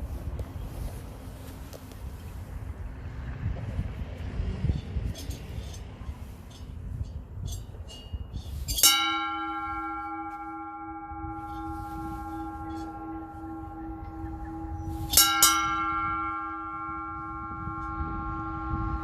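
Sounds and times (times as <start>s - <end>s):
wind rumble on microphone: 0.0s - 19.0s
metal bell ringing: 4.7s - 19.0s.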